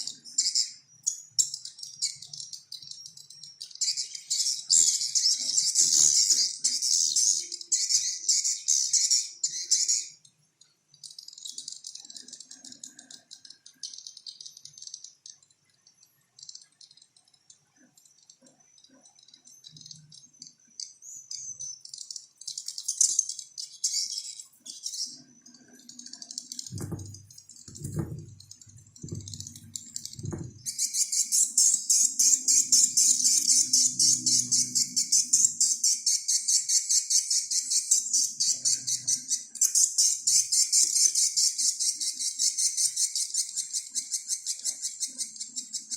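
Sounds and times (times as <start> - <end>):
low thuds: 26.7 - 30.7.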